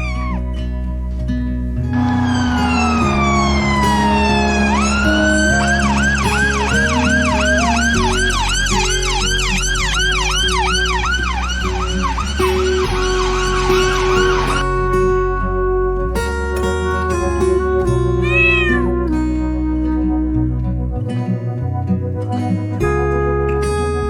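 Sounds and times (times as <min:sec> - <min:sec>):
ambulance siren wail and yelp: 0:00.0 - 0:00.5, 0:01.9 - 0:14.7
background music with held notes: 0:00.0 - 0:24.0.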